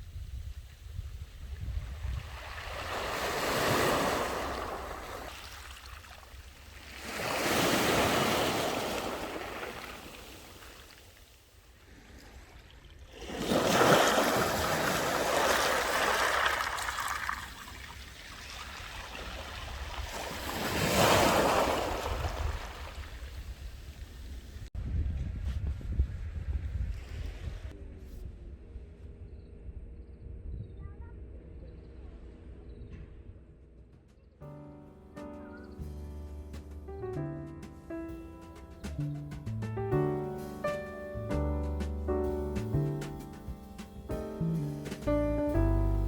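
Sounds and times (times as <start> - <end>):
wind rumble on microphone: 0.0 - 5.3, 18.0 - 33.8
sea waves washing onto beach: 1.8 - 24.6.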